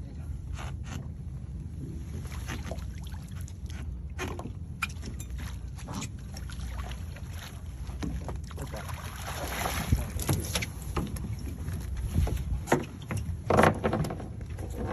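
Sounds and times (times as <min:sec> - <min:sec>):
steady low rumble: 0:00.0 - 0:13.5
knocks and clatters on boat hull: 0:03.7 - 0:06.2, 0:07.9 - 0:08.9, 0:09.7 - 0:14.9.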